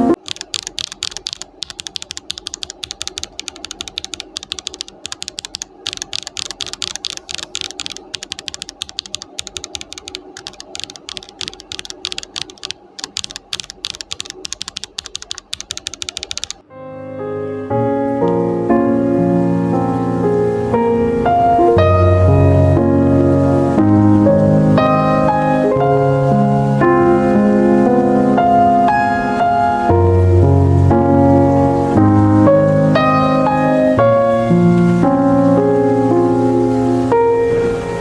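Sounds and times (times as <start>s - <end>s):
soft piano music: 0.0s - 38.0s
mechanical keyboard typing: 0.2s - 16.6s.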